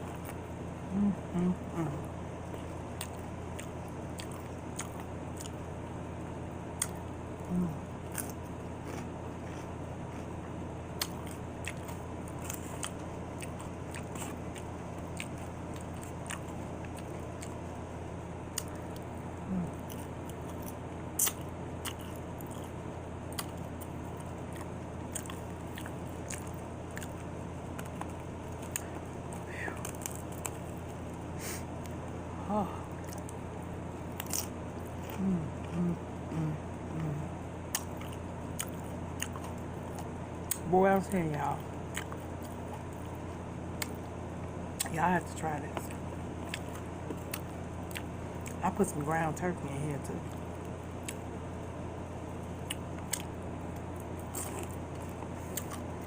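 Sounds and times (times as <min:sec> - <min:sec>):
crunchy chewing: 0:00.0 - 0:45.0, 0:45.7 - 0:48.7, 0:50.2 - 0:56.0
short low hums: 0:00.0 - 0:48.7
steady low background hum: 0:00.0 - 0:56.0.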